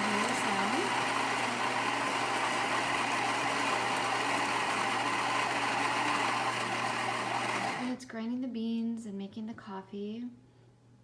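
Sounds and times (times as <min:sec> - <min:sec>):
coffee grinder whirring: 0:00.0 - 0:08.0.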